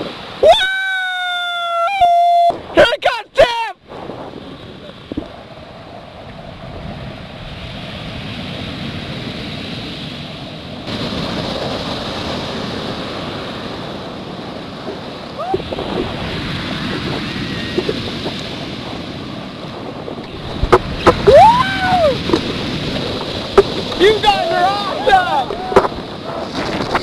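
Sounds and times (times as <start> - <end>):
ocean surf roaring: 0.0 - 27.0
wind buffeting microphone: 3.8 - 27.0
faint shouts: 21.3 - 22.2, 24.0 - 26.5.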